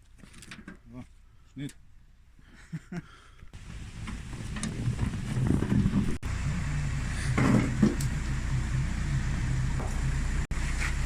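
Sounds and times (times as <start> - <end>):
engine idling: 3.6 - 11.0.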